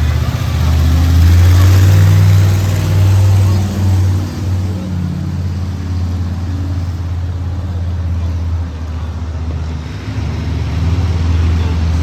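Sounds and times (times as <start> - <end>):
monster truck engines running: 0.0 - 12.0.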